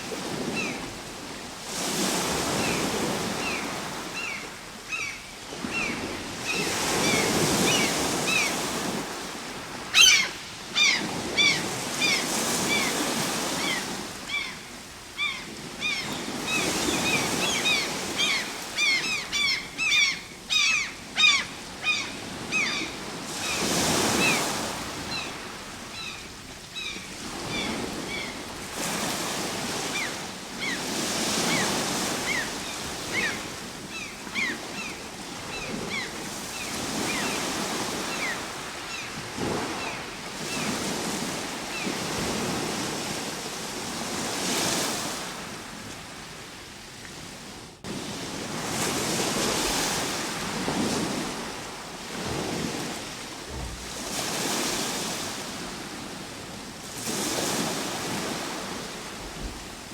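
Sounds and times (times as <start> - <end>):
ocean surf breaking: 47.9 - 59.9.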